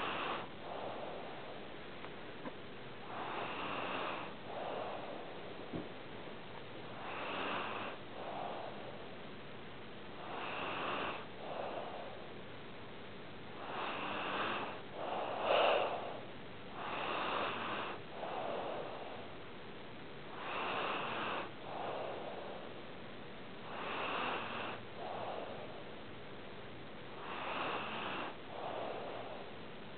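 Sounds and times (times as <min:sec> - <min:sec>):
pet snoring: 0:00.0 - 0:01.7, 0:03.0 - 0:05.9, 0:06.9 - 0:09.2, 0:10.2 - 0:12.3, 0:13.5 - 0:19.3, 0:20.3 - 0:22.8, 0:23.6 - 0:25.8, 0:27.2 - 0:29.6.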